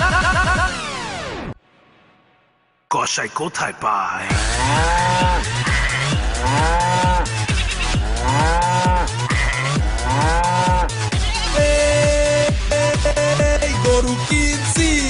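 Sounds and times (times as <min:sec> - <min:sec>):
electronic dance beat: 0:04.3 - 0:15.0
sampled cow moo: 0:04.5 - 0:07.4, 0:08.1 - 0:11.0.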